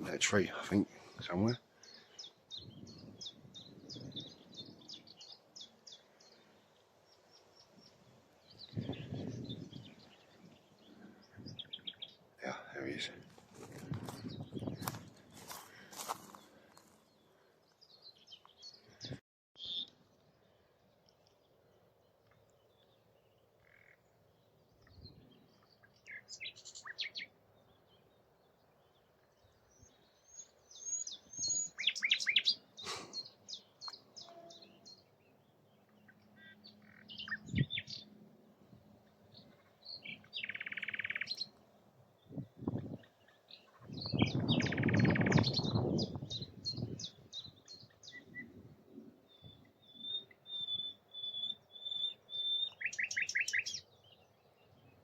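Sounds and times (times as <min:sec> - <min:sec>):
nightingale singing: 0:24.8 - 0:27.8, 0:29.7 - 0:35.0, 0:35.9 - 0:38.2, 0:39.3 - 0:41.5, 0:42.2 - 0:48.6, 0:49.3 - 0:54.9.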